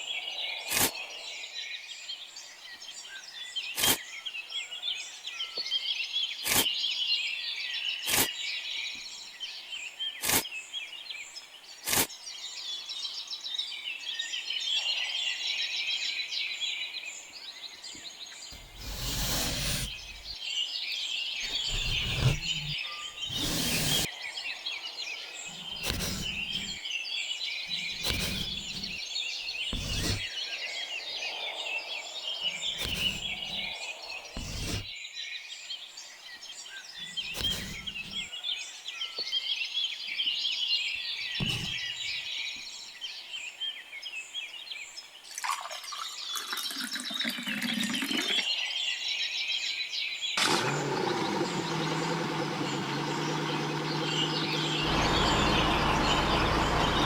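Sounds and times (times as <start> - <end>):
birds chirping: 16.7 - 35.0, 36.3 - 43.3, 45.9 - 57.0
small motor running: 18.6 - 20.4, 21.5 - 24.1, 25.5 - 26.8, 27.7 - 29.0, 29.7 - 30.3, 32.6 - 33.7, 34.4 - 34.9, 37.2 - 38.3, 41.4 - 41.8, 50.4 - 57.0.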